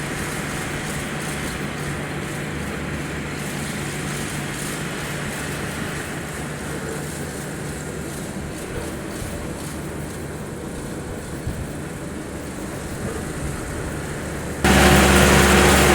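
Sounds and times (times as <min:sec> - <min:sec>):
combine harvester running: 0:13.3 - 0:15.9.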